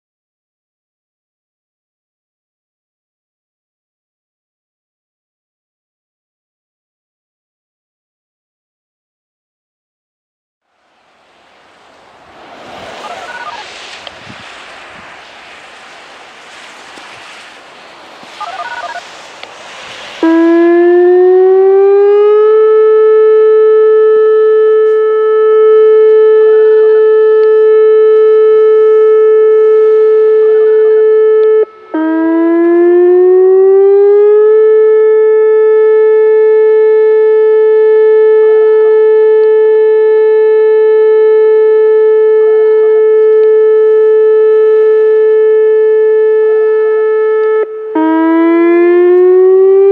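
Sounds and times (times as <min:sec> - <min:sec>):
electronic warning siren tone: 0:11.0 - 0:14.4, 0:18.0 - 0:49.9
wind noise on microphone: 0:12.4 - 0:30.6.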